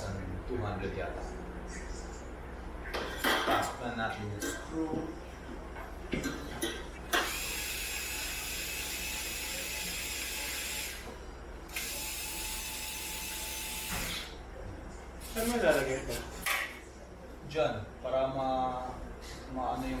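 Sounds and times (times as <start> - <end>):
electric screwdriver running: 7.2 - 11.0, 11.7 - 14.2.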